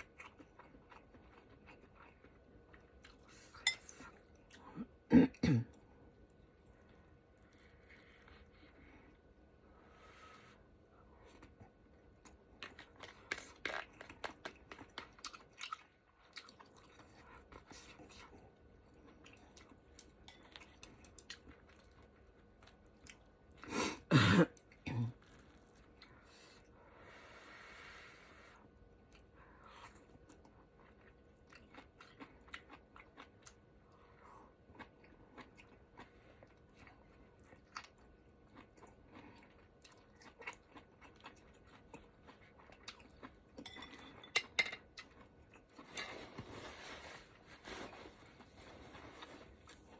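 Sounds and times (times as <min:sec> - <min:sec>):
wet chewing: 0:34.7 - 0:43.9
soft crunching: 0:45.0 - 0:49.9.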